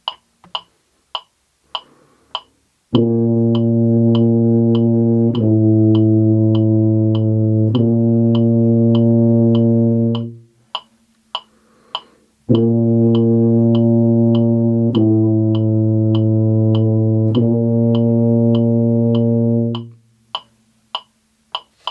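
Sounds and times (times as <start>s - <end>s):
metronome clicking: 0.0s - 21.9s
tuba holding low notes: 2.9s - 10.6s, 12.5s - 20.2s.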